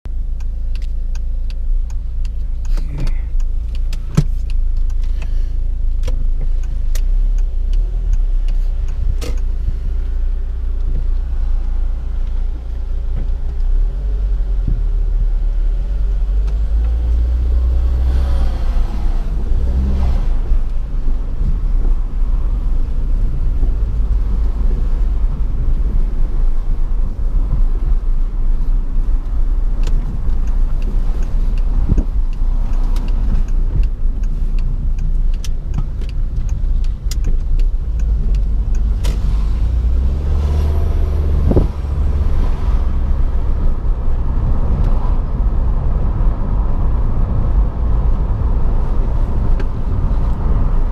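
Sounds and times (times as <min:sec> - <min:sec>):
car engine and road rumble: 0:00.0 - 0:50.9
sharp ticks: 0:29.7 - 0:39.3.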